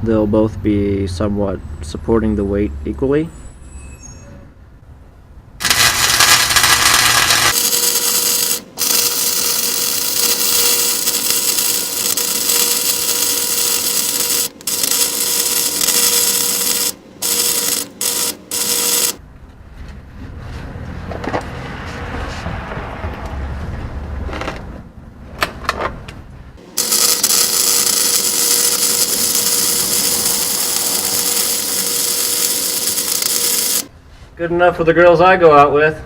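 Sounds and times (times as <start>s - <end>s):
welding arc crackling and hissing: 5.6s - 19.2s, 26.6s - 33.9s.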